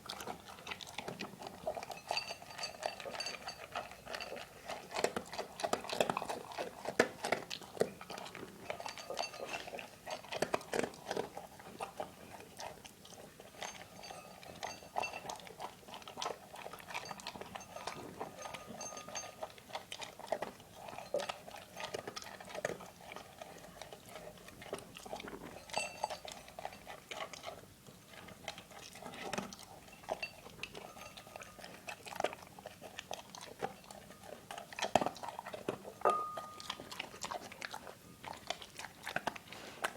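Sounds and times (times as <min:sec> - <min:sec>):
dog chewing and clicking: 0:00.0 - 0:39.9
faint ringing: 0:36.0 - 0:36.7.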